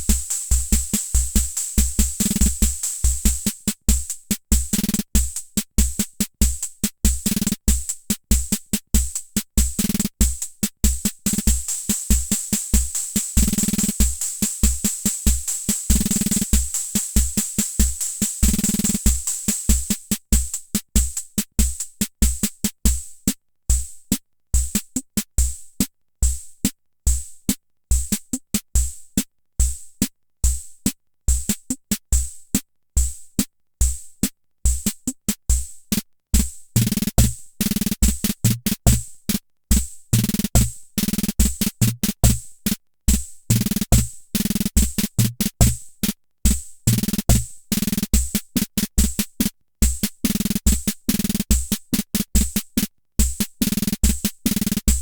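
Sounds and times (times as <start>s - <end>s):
rhythm machine beat: 0.0s - 3.9s, 9.8s - 20.2s, 36.8s - 39.4s, 40.1s - 42.5s, 43.5s - 55.0s.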